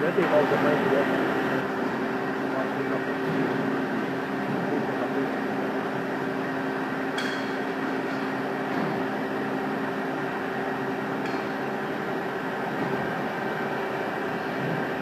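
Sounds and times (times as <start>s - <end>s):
hydraulic unit humming: 0.0s - 15.0s.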